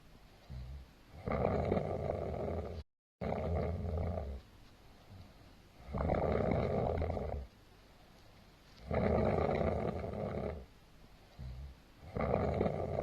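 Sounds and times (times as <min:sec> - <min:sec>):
quiet breathing: 0:00.1 - 0:01.2, 0:04.1 - 0:12.2.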